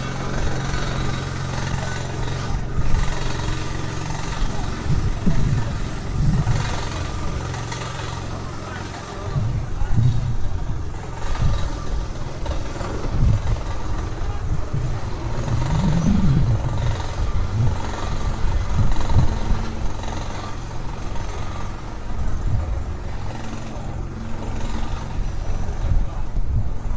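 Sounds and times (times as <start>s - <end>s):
heavy machinery engines rumbling: 0.0s - 26.9s.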